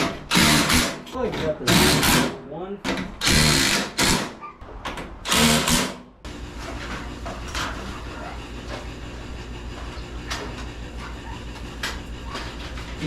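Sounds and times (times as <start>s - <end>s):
low mechanical hum: 0.0s - 13.0s
power drill running: 0.3s - 1.0s, 3.2s - 4.4s, 5.3s - 6.5s.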